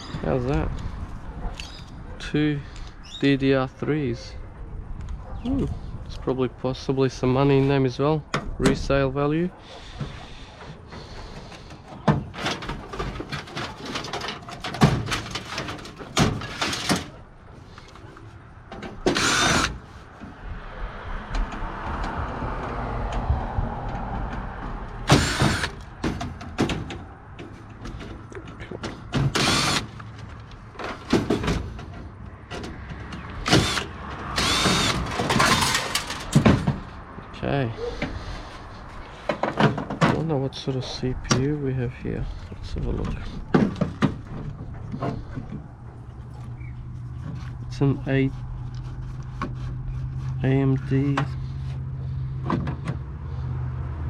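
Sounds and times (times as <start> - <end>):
metallic scraping and rattling: 9.8 - 20.3, 25.1 - 37.0.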